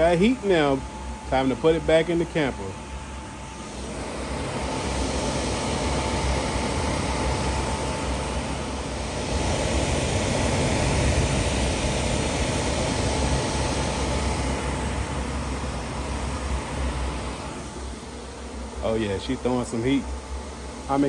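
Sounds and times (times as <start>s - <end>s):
faint constant whine: 0.0s - 21.0s
furnace blower rushing hum: 0.0s - 21.0s.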